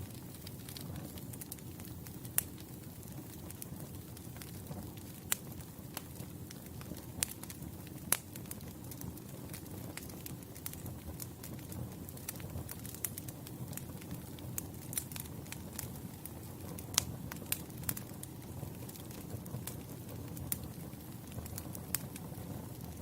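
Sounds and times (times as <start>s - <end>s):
campfire crackling and popping: 0.0s - 23.0s.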